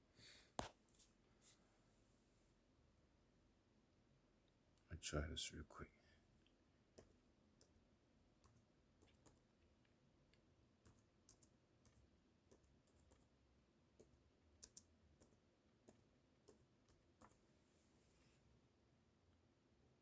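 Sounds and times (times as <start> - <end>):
keyboard typing and mouse clicks: 6.9 - 17.5.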